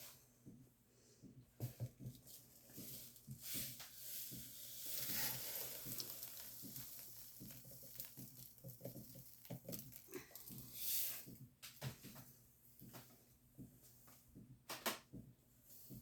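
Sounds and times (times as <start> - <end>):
packaging rustling: 4.6 - 10.7.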